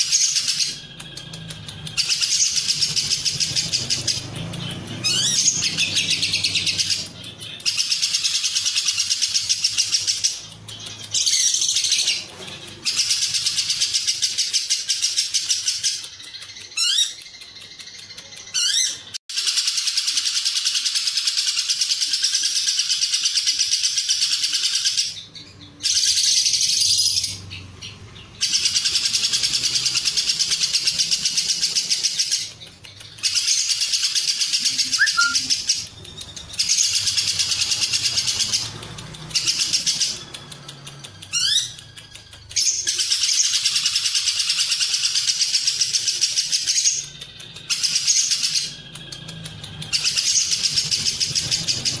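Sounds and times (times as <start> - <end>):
lovebird chattering trill: 0.0 - 25.2, 25.8 - 52.0
lovebird rising squeaks: 35.0 - 35.5.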